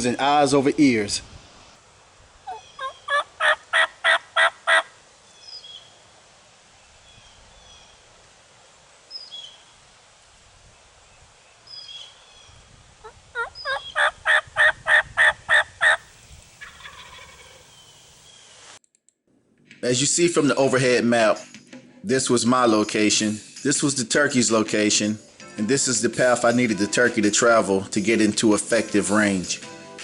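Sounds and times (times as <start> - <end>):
wild turkey calling: 2.4 - 5.8, 13.4 - 18.3
low wind rumble: 12.4 - 18.2
faint bird chirps: 16.0 - 18.4.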